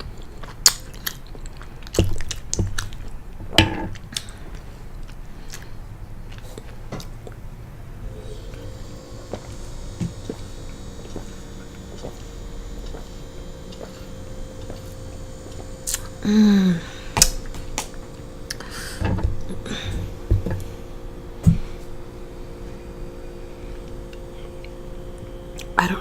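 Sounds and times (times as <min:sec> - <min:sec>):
mouth noises chewing pasta: 0:00.0 - 0:08.7, 0:10.1 - 0:20.2.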